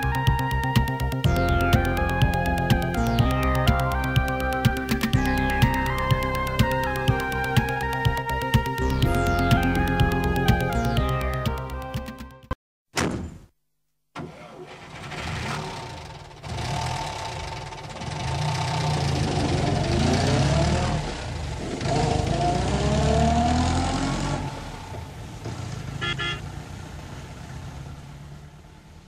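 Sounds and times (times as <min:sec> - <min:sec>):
engine revving with rising pitch: 0:14.9 - 0:28.6.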